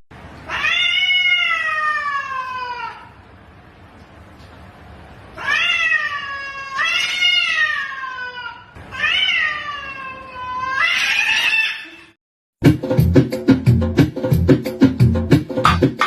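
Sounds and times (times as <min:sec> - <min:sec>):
cat meowing: 0:00.4 - 0:03.2, 0:05.4 - 0:12.2.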